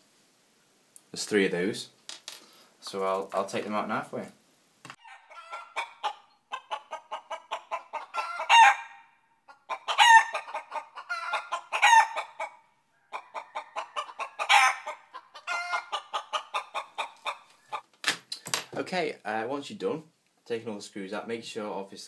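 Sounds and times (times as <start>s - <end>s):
hen squawking: 5.0s - 17.8s
hen clucking: 5.0s - 17.9s.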